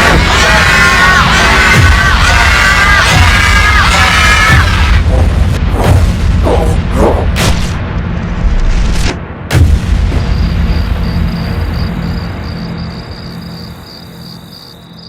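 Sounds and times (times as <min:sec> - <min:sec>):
steady low rumble: 0:00.0 - 0:14.9
cartoon booms and bangs: 0:04.9 - 0:08.3, 0:09.4 - 0:12.4.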